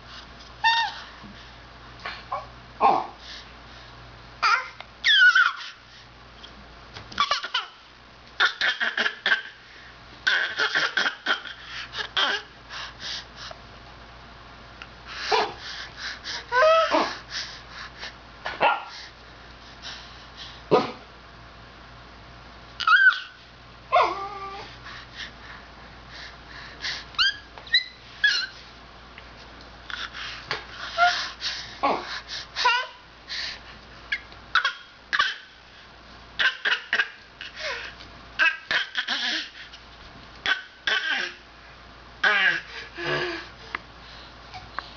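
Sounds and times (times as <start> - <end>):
dog whining and yipping: 5.0 - 5.8, 22.8 - 24.7, 27.2 - 28.6
child fake coughing: 10.3 - 11.6, 34.6 - 35.5, 36.4 - 37.2, 40.5 - 41.4.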